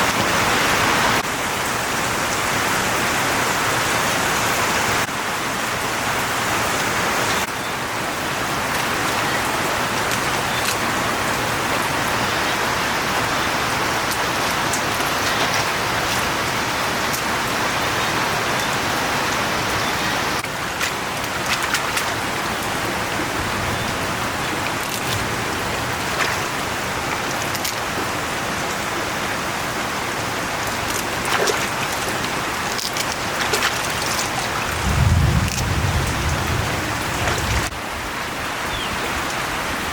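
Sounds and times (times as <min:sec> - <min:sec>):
heavy rain falling: 0:00.0 - 0:39.9
sharp rain drop ticks: 0:30.6 - 0:37.7.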